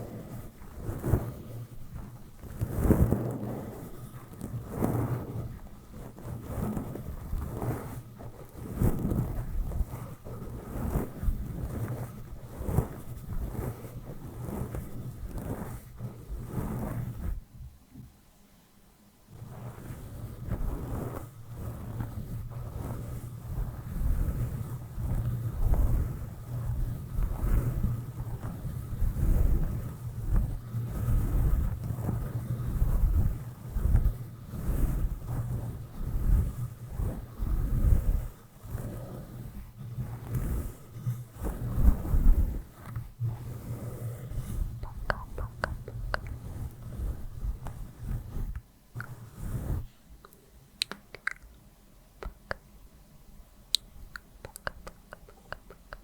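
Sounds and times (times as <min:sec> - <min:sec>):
brush swishing over microphone: 0:00.0 - 0:18.1, 0:19.3 - 0:51.3, 0:53.7 - 0:56.0
sharp little clicks: 0:50.3 - 0:51.6.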